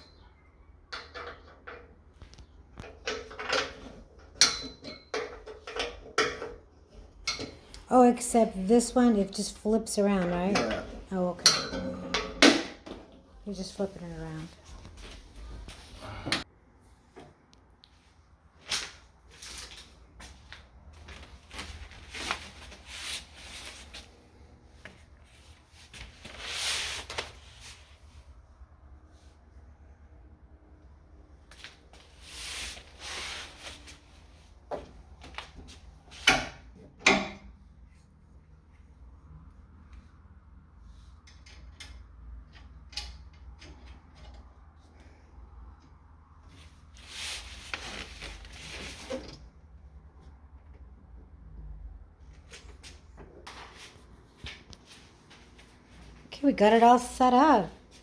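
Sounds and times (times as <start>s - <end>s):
hardware rustling and rubbing: 19.2s - 28.3s, 46.5s - 49.5s.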